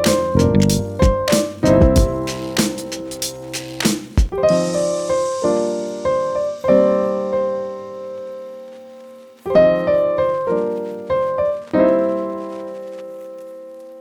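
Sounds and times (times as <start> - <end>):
slow piano chords: 0.0 - 3.6, 4.3 - 14.0.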